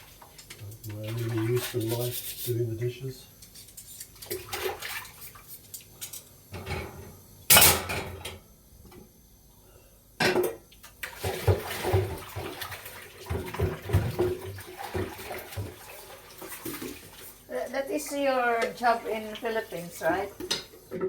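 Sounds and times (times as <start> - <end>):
dishes clinking and clattering: 6.0 - 8.4, 10.2 - 10.6, 20.3 - 21.0
water rushing into sink: 11.0 - 21.0.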